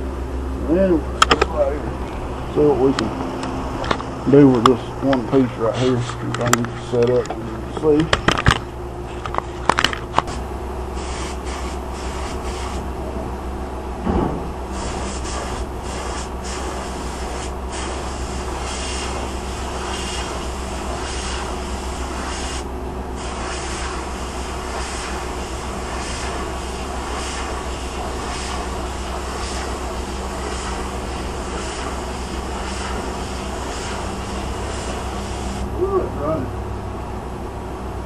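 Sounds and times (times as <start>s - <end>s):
air compressor humming: 0.0s - 38.0s
paint spray gun hissing: 11.0s - 12.8s, 14.7s - 35.7s.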